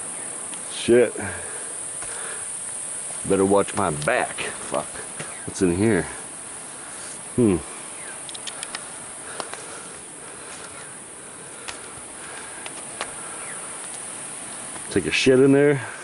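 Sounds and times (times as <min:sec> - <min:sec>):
insects chirring: 0:00.0 - 0:16.0
short falling vocal sound: 0:07.4 - 0:07.7
faint clicks: 0:08.2 - 0:09.7, 0:11.6 - 0:13.2.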